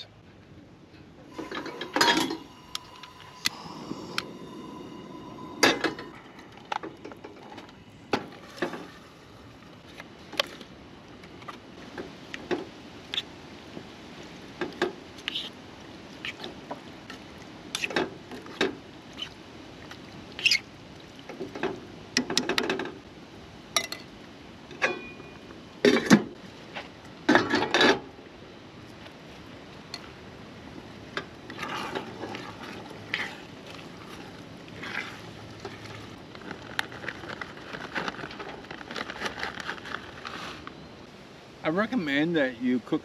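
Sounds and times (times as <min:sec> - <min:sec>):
utensils and dishes clinking: 0:01.3 - 0:09.1.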